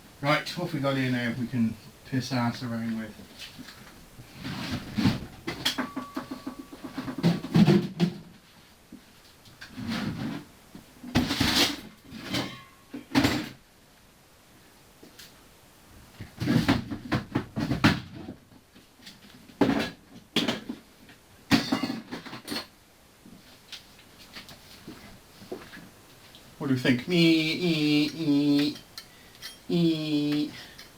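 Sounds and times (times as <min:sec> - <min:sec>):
metal tools clattering: 0:28.6 - 0:29.7.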